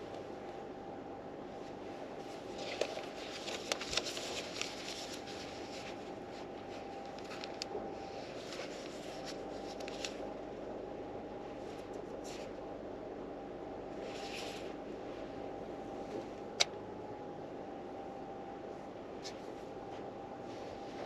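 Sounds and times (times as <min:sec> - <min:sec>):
steady low hum: 0:00.0 - 0:21.0
book pages rustling: 0:01.6 - 0:10.3, 0:11.6 - 0:12.6, 0:14.0 - 0:14.8.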